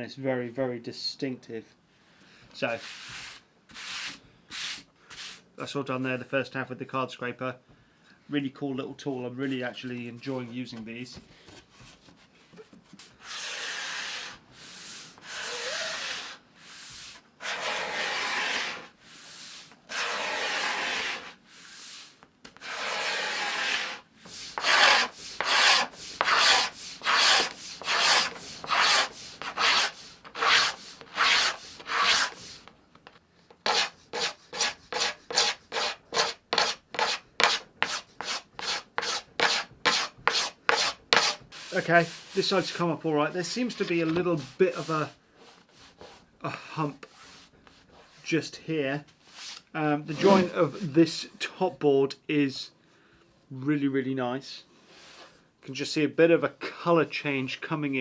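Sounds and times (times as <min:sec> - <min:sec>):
card scraper on wood: 0:13.2 - 0:21.7, 0:22.6 - 0:32.7, 0:33.5 - 0:42.4, 0:49.4 - 0:50.6.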